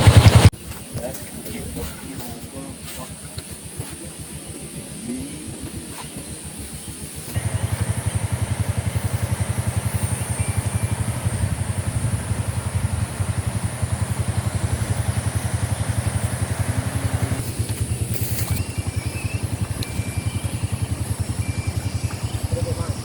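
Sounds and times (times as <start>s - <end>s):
vehicle engine running: 0.0s - 23.0s
hiss: 2.7s - 18.7s.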